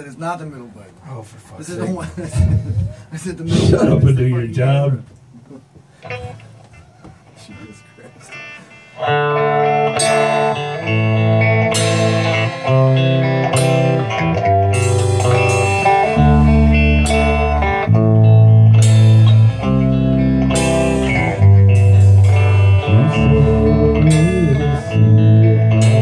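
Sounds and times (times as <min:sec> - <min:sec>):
bass line: 0:02.4 - 0:04.7, 0:09.1 - 0:26.0
guitar chords ringing: 0:07.5 - 0:26.0.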